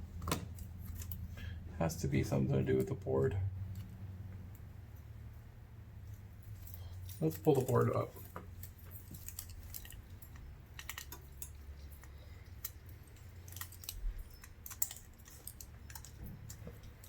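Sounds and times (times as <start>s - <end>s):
low steady hum: 0.0s - 17.0s
small tools clicking on plastic: 6.6s - 17.0s.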